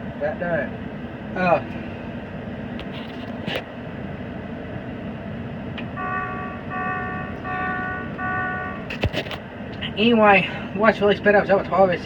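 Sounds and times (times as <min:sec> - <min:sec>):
multi-tone warning beeps: 0:06.0 - 0:08.9.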